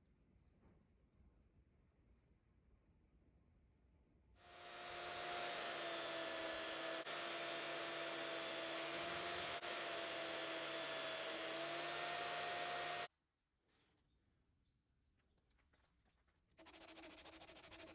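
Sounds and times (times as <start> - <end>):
power tool motor whining: 4.4 - 13.1.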